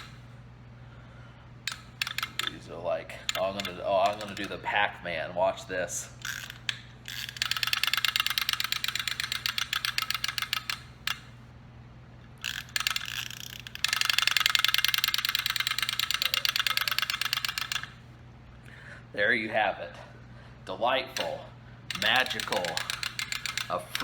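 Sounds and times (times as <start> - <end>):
chattering teeth toy clacking: 1.7 - 2.6, 3.3 - 4.6, 6.2 - 11.3, 12.4 - 18.0, 21.2 - 24.0.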